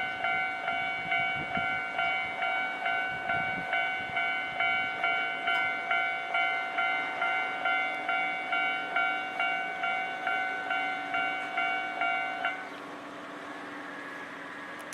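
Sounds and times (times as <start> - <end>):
level-crossing warning bell: 0.0 - 14.7.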